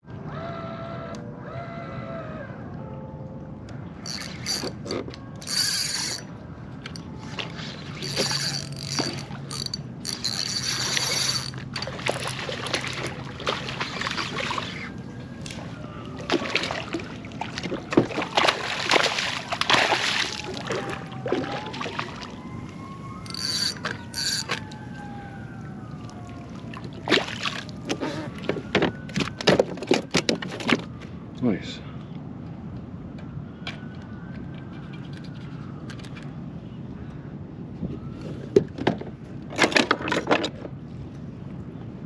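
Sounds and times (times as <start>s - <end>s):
fishing reel drag clicking: 4.1s - 6.3s, 8.0s - 11.6s, 23.2s - 24.6s
sharp knocks and splashes: 10.9s - 14.7s, 16.3s - 22.3s.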